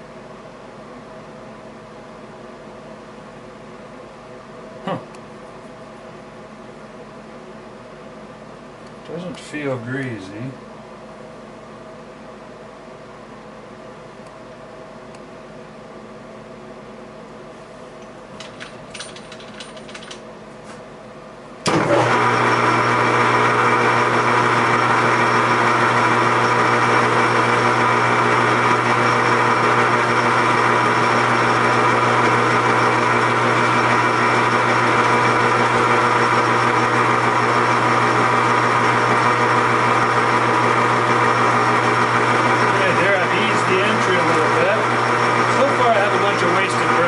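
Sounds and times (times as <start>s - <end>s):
lathe motor humming: 21.7s - 47.0s.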